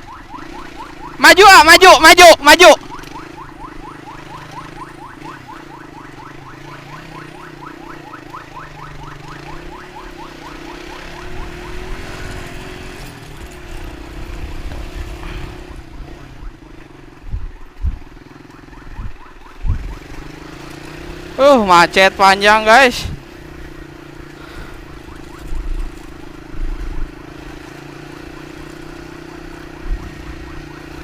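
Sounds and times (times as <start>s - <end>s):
electronic siren yelping: 0.0s - 13.0s, 15.2s - 31.0s
engine running: 8.1s - 31.0s.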